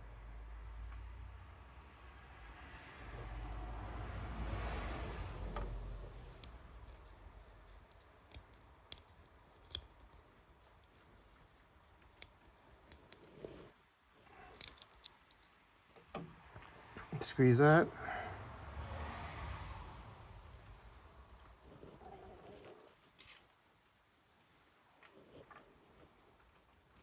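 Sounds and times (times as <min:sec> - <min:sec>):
wiring tools clicking and snipping: 0:06.4 - 0:13.6, 0:14.4 - 0:16.2.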